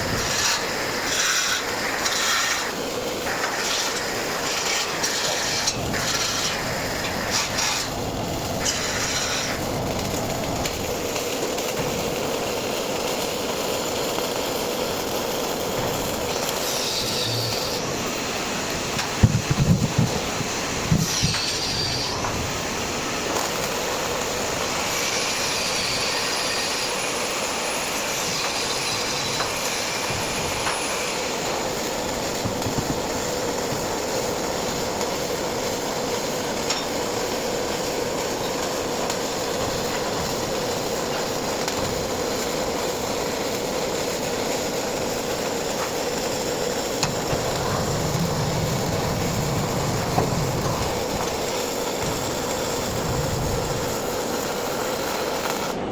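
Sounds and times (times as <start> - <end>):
welding arc crackling: 0.0 - 55.9
constant hum: 28.0 - 54.6.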